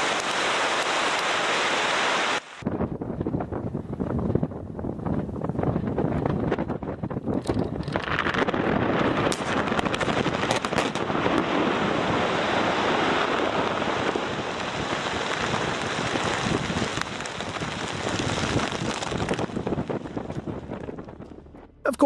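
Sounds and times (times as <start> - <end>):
crackling blast detonations: 7.9 - 21.7.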